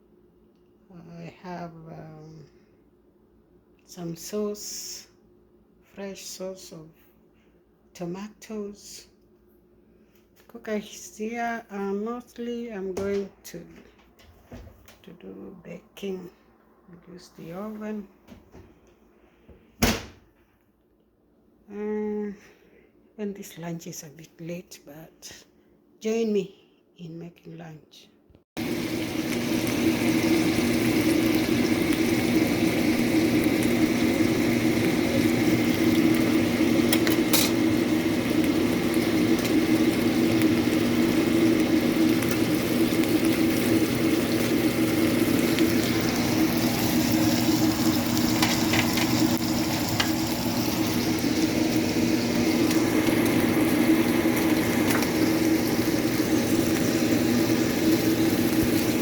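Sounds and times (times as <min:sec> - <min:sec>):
meat sizzling in oil: 0:28.6 - 0:59.0.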